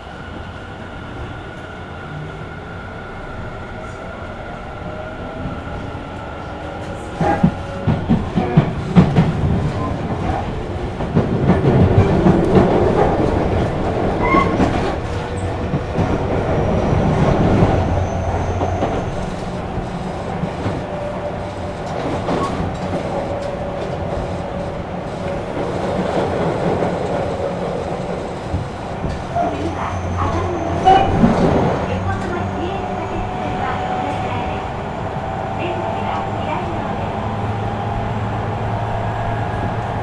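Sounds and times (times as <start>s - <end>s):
train wheels rumbling on rails: 0.0s - 40.0s
rail-joint clicks: 6.6s - 38.0s.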